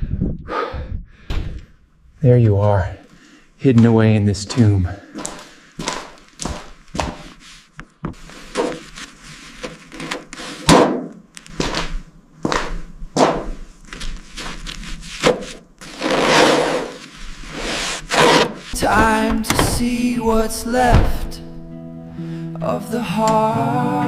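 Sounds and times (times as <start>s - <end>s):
scraping noise: 15.8s - 19.0s
knocks and thuds: 18.8s - 19.9s, 20.9s - 21.4s.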